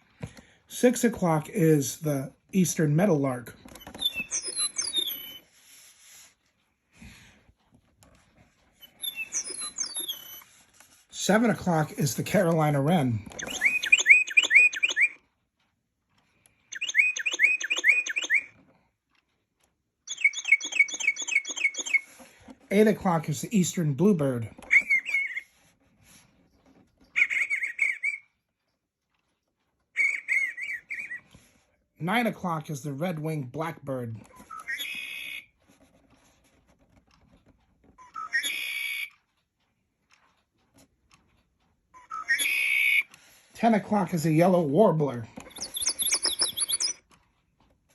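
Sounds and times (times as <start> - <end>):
recorded wren song from clock: 0.8 - 5.8, 8.6 - 25.8, 26.6 - 47.9
recorded bird song with buzzy trill: 3.8 - 5.5, 8.8 - 10.5, 13.3 - 15.2, 16.7 - 18.6, 20.0 - 22.3, 24.2 - 25.6, 27.0 - 28.5, 29.9 - 31.5, 34.4 - 35.6, 38.1 - 39.1, 42.0 - 43.1, 44.0 - 47.1.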